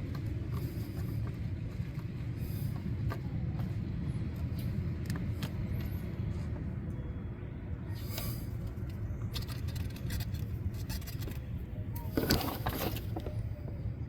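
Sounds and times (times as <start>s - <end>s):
parts clicking and scraping: 8.0s - 13.5s.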